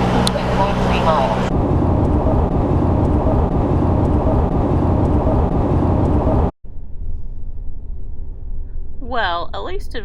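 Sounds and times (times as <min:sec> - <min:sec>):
car road and engine rumble: 0:00.0 - 0:10.0.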